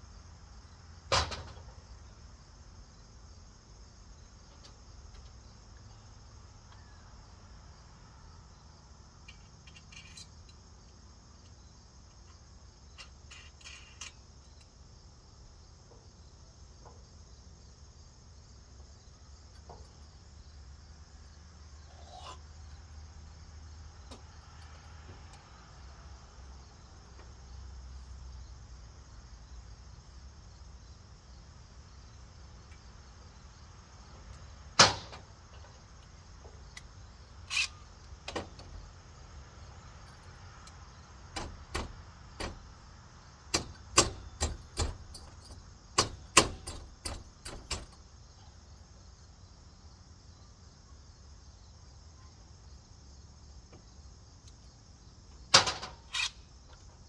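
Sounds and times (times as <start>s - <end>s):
sharp knocks and clicks: 41.4s - 42.7s, 43.5s - 48.0s.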